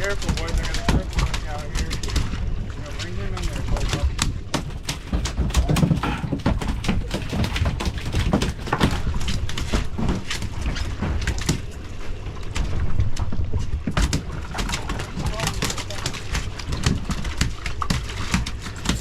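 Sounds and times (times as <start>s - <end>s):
wind rumbling on microphone: 0.0s - 19.0s
knocks and slaps: 3.0s - 11.7s, 12.6s - 19.0s.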